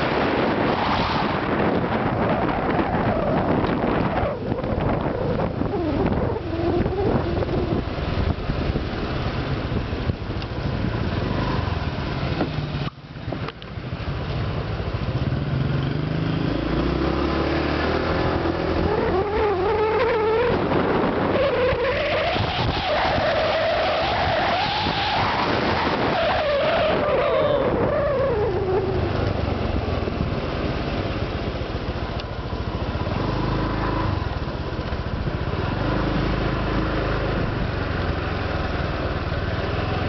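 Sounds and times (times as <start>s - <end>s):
scooter engine running: 27.3s - 40.0s.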